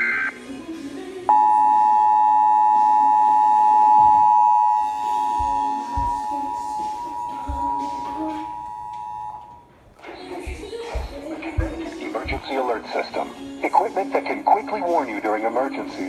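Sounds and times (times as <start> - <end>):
two-tone alert alarm: 1.3 - 9.6.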